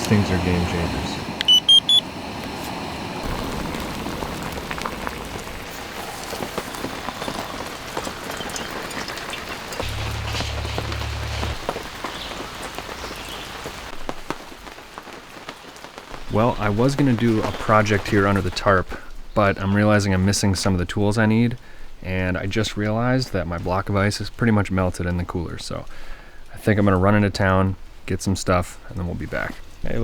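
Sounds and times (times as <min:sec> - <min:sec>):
short electronic beeps: 0:01.4 - 0:02.0
rain tapping on tarp: 0:03.2 - 0:21.6
low hum: 0:09.8 - 0:12.0.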